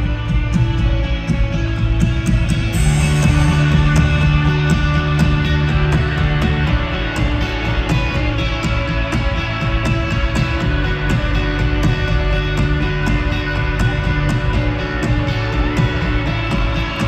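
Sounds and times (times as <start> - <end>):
rock band playing live: 0.0 - 17.0
bright cymbal wash: 2.7 - 8.3.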